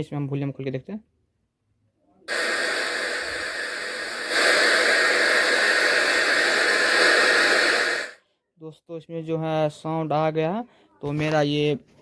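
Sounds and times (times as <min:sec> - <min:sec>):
amplifier speaker hiss: 0:02.3 - 0:08.2.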